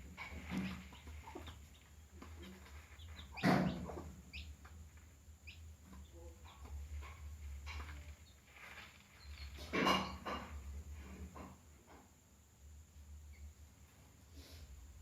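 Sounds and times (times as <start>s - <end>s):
chicks peeping: 0.0s - 10.0s
hen clucking: 0.1s - 7.2s.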